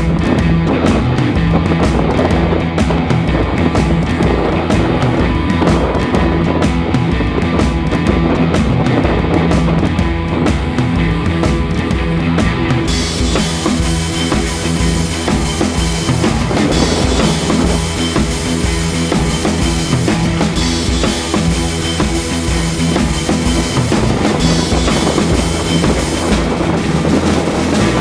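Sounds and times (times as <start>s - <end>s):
driving drum beat and bass: 0.0s - 28.0s.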